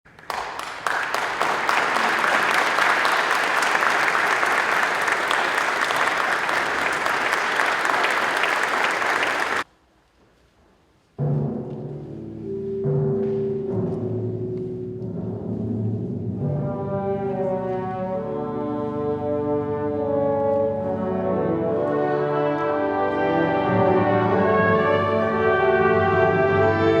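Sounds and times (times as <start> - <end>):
audience applauding: 0.1 - 9.7
timpani: 11.2 - 27.0.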